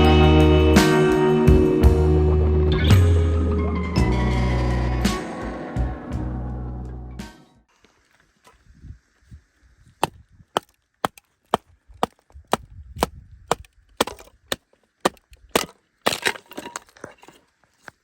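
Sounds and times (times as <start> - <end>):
chopping on wood: 10.0 - 16.2.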